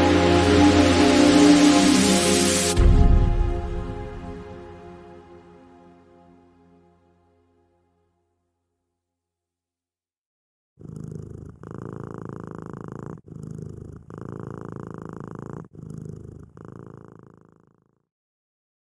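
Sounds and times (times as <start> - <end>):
cat purring: 10.8 - 18.0.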